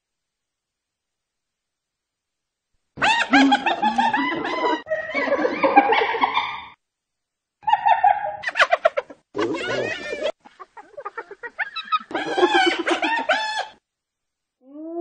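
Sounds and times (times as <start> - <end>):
hyena giggling: 3.0 - 6.7, 7.9 - 13.8.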